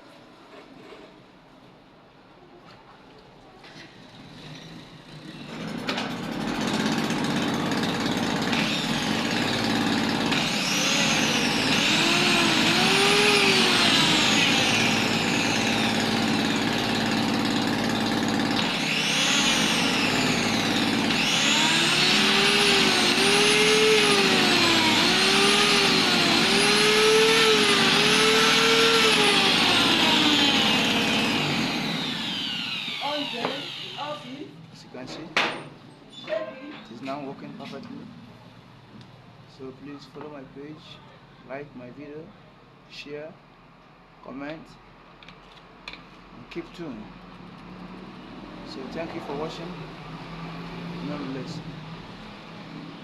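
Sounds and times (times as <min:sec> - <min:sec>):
angle grinder whining: 0:04.2 - 0:34.6.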